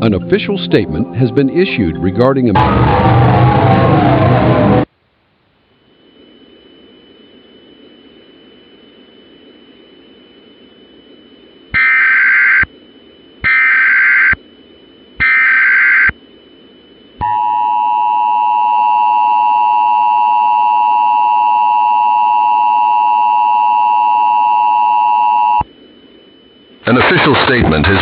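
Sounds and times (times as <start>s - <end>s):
warbling data bursts: 9.6s - 17.7s
two-tone alarm: 11.7s - 12.7s, 13.4s - 14.4s, 15.2s - 16.2s, 17.2s - 25.6s.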